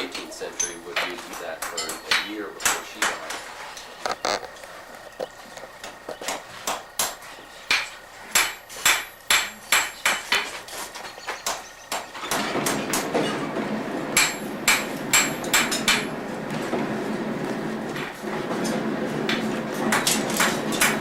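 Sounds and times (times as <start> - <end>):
hammer striking iron on an anvil: 0.6 - 3.3, 6.7 - 10.5, 14.2 - 16.1, 19.9 - 21.0.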